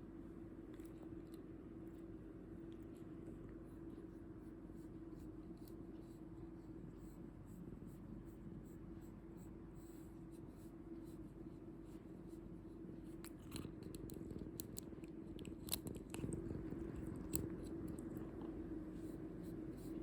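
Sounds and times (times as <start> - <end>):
steady low hum: 0.0 - 20.0
brush rubbing through cat fur: 3.7 - 13.0, 18.6 - 20.0.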